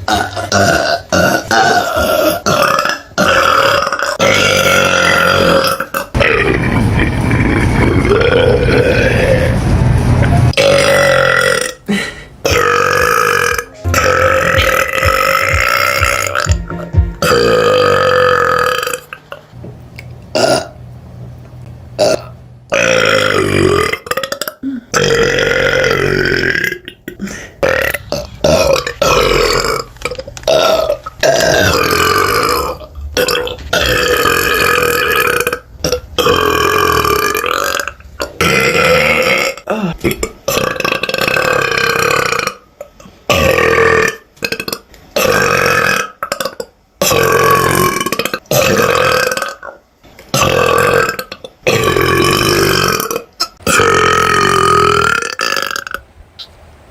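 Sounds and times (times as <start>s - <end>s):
woman burping: 0.0s - 6.2s, 10.6s - 16.6s, 22.0s - 42.6s.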